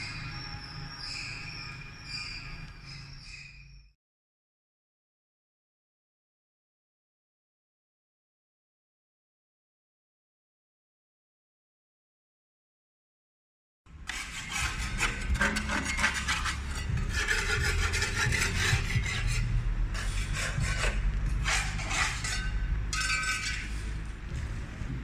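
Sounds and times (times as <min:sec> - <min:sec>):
low hum: 0:13.9 - 0:25.0
tool scraping rough surface: 0:14.1 - 0:24.9.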